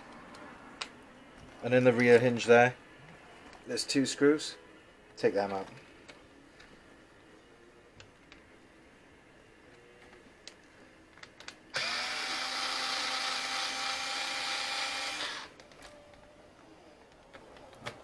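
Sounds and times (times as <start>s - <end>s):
drill whining: 11.7s - 15.6s.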